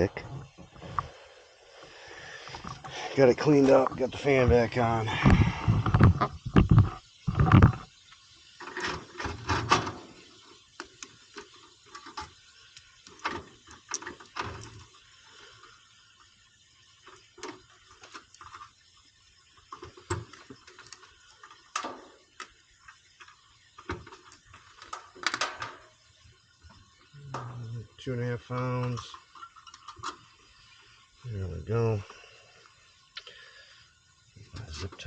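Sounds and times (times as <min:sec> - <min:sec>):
hand tools and metal parts clattering: 0:23.8 - 0:26.0, 0:28.5 - 0:30.2.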